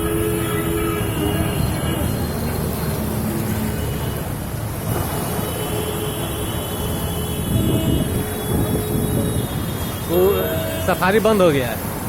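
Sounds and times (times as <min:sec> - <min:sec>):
traffic noise: 0:00.0 - 0:12.0
vehicle engine rumble: 0:00.0 - 0:12.0.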